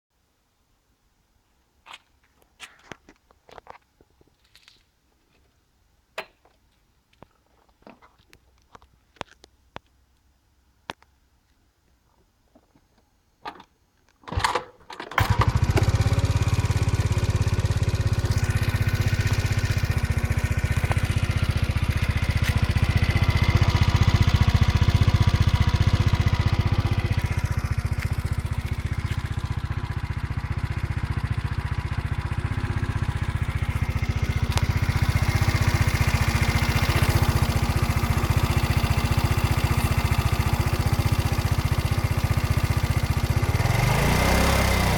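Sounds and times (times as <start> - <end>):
scooter engine cranking: 14.3 - 44.9
scooter engine idling: 15.2 - 44.9.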